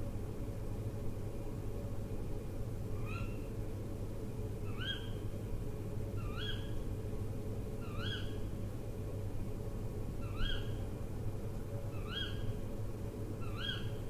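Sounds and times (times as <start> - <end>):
owl calling: 13.4 - 14.0.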